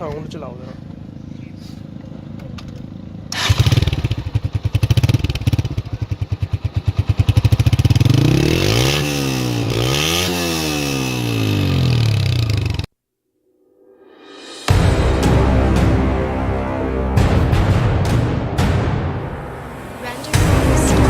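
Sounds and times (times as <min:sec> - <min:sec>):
motorcycle engine idling and revving: 0:00.0 - 0:12.9.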